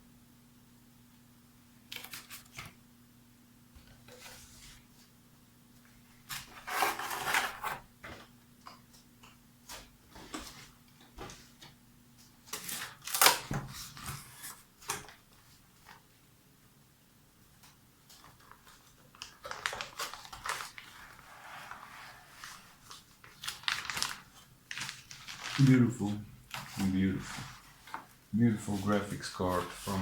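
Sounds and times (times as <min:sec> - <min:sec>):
faint steady hum: 0:00.0 - 0:30.0
packaging rustling and clicking: 0:18.1 - 0:21.2, 0:22.4 - 0:25.8.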